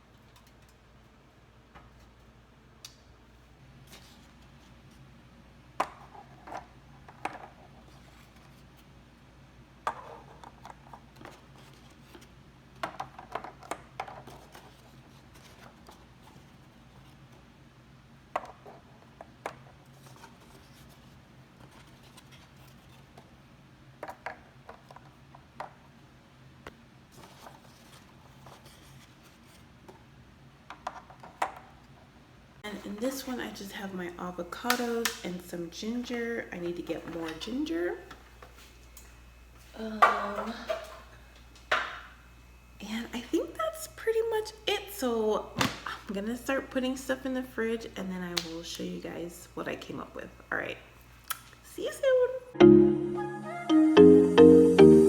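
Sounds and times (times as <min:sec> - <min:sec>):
packaging rustling and scraping: 0:19.7 - 0:23.3, 0:27.1 - 0:30.1.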